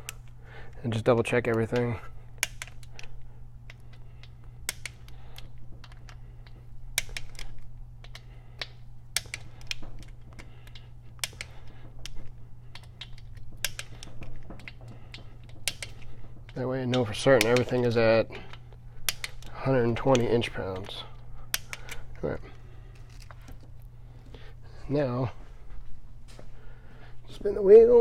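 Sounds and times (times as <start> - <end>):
steady low hum: 0.0 - 28.0
torque wrench clicking: 3.7 - 22.0.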